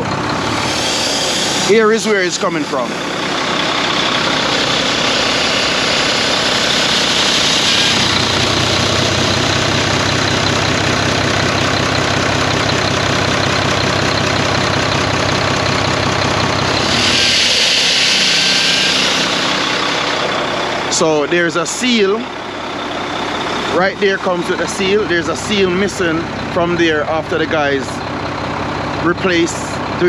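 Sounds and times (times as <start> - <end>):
diesel engine idling: 0.0 - 30.0
rush of air hissing: 16.8 - 20.2.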